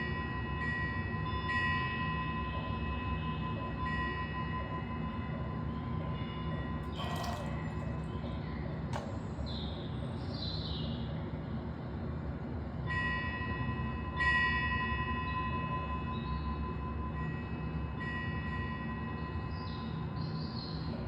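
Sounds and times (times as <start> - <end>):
metal bell ringing: 6.9 - 8.2.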